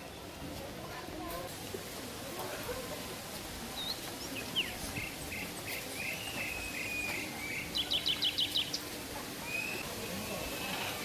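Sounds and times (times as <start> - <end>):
songbird chirping: 3.7 - 11.0.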